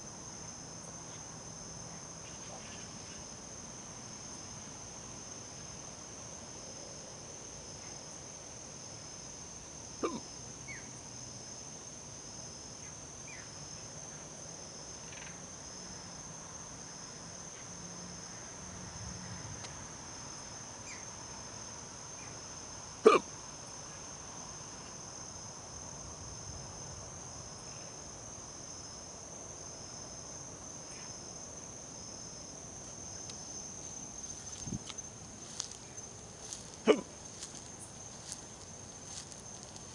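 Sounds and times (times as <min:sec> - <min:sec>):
night insects trilling: 0:00.0 - 0:39.9
person hiccuping: 0:10.0 - 0:10.3, 0:23.0 - 0:23.3, 0:36.8 - 0:37.1.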